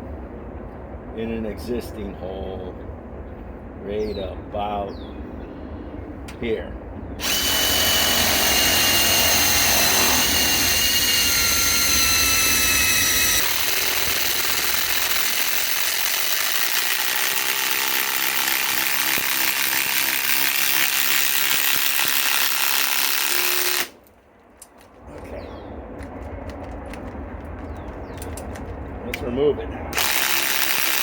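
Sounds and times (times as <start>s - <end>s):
impact wrench rattling hammer: 7.2s - 23.9s
impact wrench motor whine: 7.2s - 24.0s, 30.0s - 31.0s.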